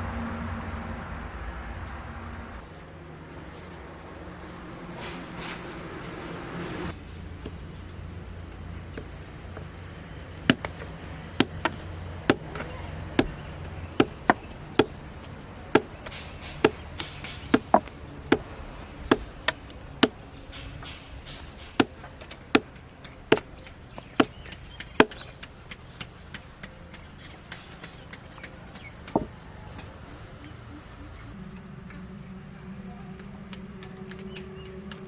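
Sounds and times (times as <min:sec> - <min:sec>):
axe chopping wood: 0:10.4 - 0:20.2, 0:20.8 - 0:25.4.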